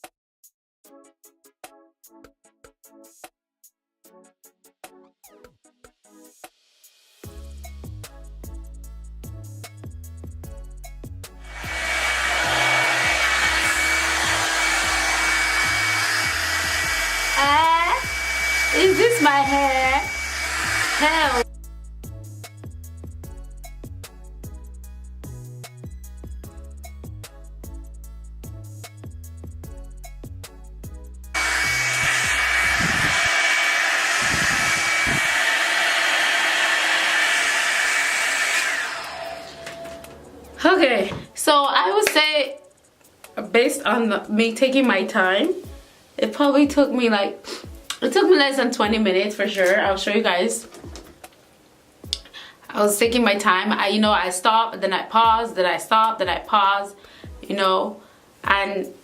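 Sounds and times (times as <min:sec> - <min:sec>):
background music with beat: 0:04.1 - 0:11.5, 0:21.4 - 0:31.4, 0:47.6 - 0:48.0
hair dryer blowing: 0:11.4 - 0:21.4, 0:31.4 - 0:41.4.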